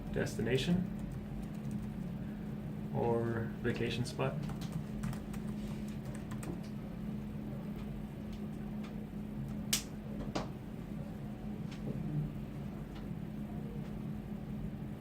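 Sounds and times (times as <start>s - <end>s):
low hum: 0.0s - 15.0s
keyboard keystrokes: 4.4s - 6.7s.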